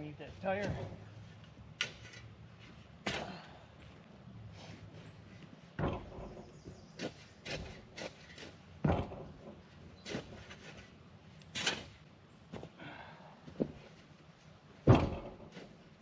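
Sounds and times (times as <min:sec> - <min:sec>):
equipment knocks and clunks: 0:05.8 - 0:06.8, 0:08.8 - 0:10.4, 0:14.8 - 0:15.7.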